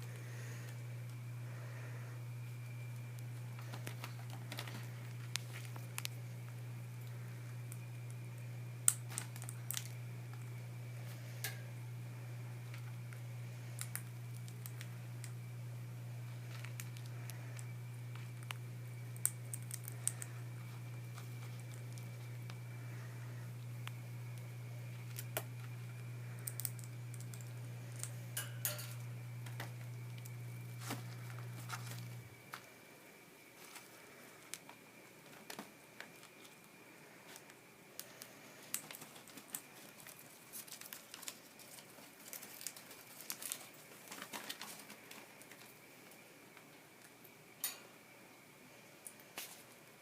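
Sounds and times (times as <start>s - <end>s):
low hum: 0.0s - 33.2s
faint high whine: 0.0s - 50.0s
parrots clicking and scratching: 3.2s - 6.2s, 16.4s - 22.4s, 23.8s - 32.6s, 37.3s - 45.7s.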